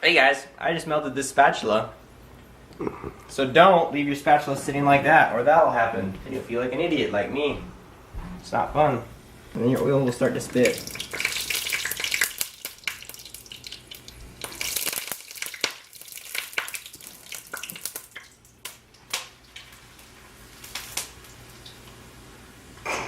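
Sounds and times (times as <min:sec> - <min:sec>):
oil sizzling and popping: 0:09.7 - 0:22.9.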